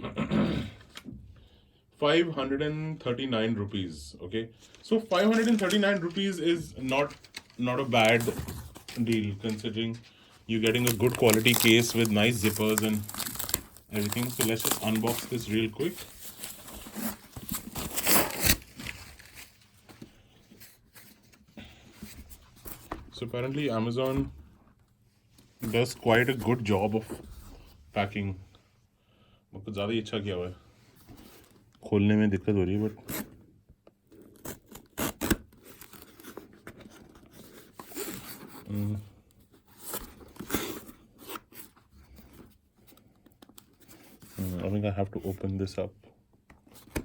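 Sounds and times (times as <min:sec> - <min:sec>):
packaging rustling and crinkling: 0:04.8 - 0:22.9, 0:34.1 - 0:45.4.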